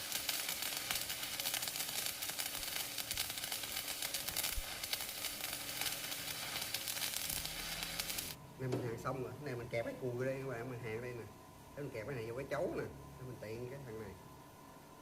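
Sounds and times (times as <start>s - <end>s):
welding arc crackling: 0.0s - 8.4s.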